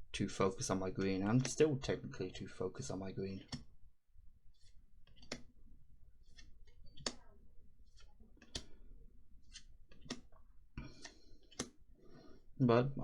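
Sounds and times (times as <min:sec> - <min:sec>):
cards sliding and rustling: 0:04.5 - 0:05.5, 0:06.2 - 0:07.2, 0:07.8 - 0:10.4, 0:11.0 - 0:11.8.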